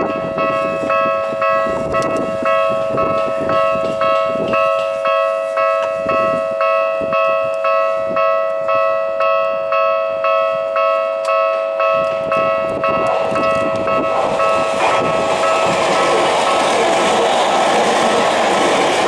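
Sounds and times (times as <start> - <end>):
level crossing bell ringing: 0.0 - 16.9.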